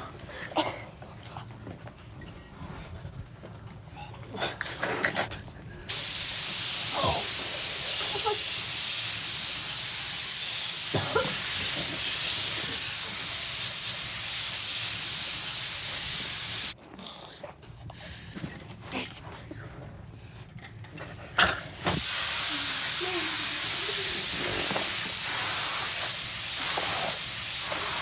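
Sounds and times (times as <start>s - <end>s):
sprayer hissing: 5.9s - 16.8s, 21.9s - 28.0s.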